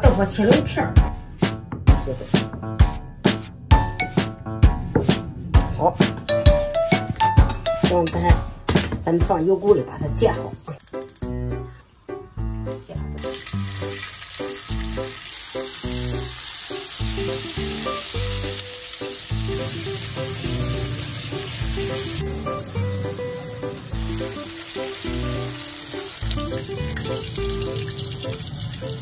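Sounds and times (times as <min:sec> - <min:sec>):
background music: 0:00.0 - 0:29.0
tofu sizzling in hot oil: 0:13.2 - 0:29.0.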